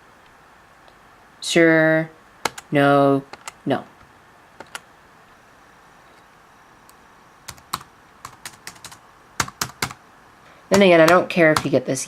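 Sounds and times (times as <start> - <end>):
laptop keyboard typing: 2.4 - 3.6, 4.6 - 4.9, 7.4 - 10.0, 10.7 - 12.0.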